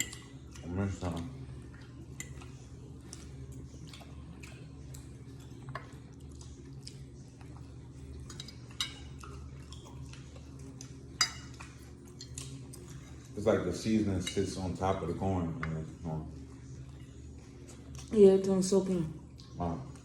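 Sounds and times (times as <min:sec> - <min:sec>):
utensils clinking against dishes: 0:00.0 - 0:03.3, 0:08.2 - 0:16.0.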